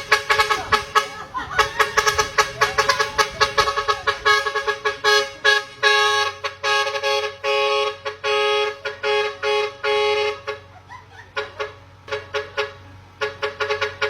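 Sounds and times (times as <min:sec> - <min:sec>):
multi-tone bus horn melody: 0:00.0 - 0:14.0.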